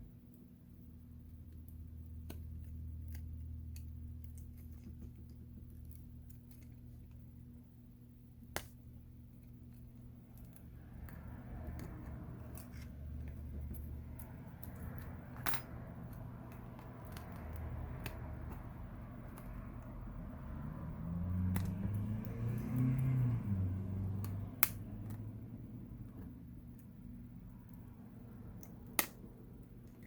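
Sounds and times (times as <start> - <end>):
steady low hum: 0.0 - 30.0.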